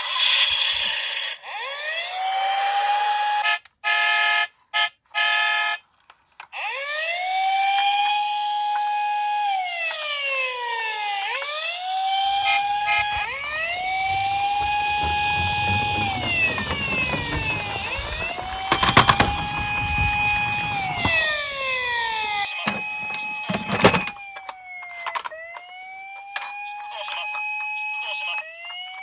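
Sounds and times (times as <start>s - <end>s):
police siren wailing: 11.8s - 24.5s
low rumble: 12.2s - 23.4s.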